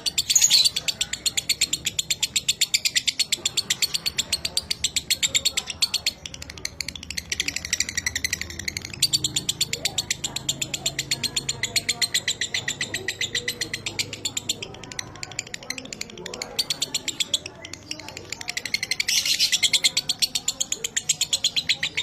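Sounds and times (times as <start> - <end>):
lovebird chattering: 0.0 - 22.0.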